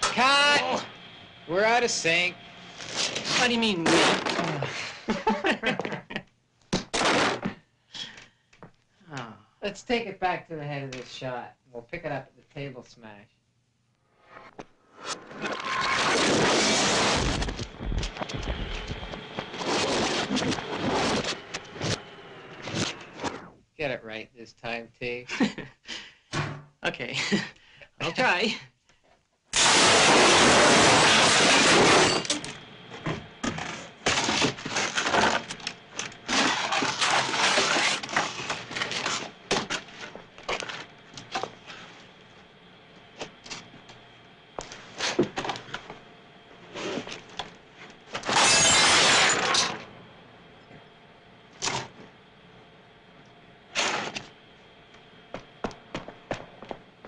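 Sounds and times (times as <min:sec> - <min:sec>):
smashing crash: 0:06.9 - 0:07.5, 0:15.4 - 0:17.5, 0:29.6 - 0:32.4, 0:48.2 - 0:49.8.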